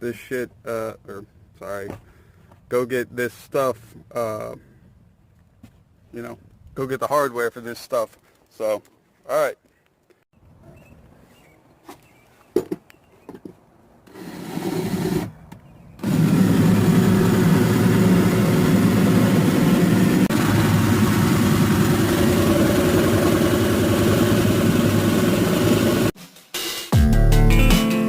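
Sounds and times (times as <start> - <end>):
engine idling: 16.0 - 26.1.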